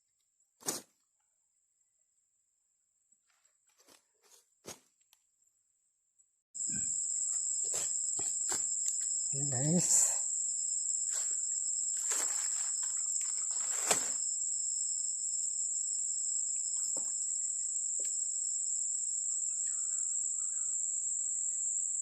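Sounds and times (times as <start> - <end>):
insects droning: 6.6 - 22.0
rustles and knocks: 12.0 - 14.2.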